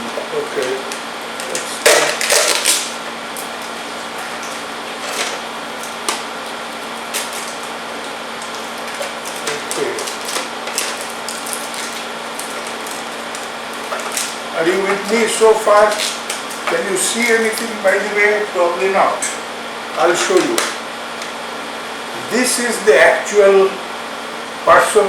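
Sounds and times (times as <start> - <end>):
air conditioner humming: 0.0 - 25.0
plastic crinkling and rustling: 0.4 - 17.8.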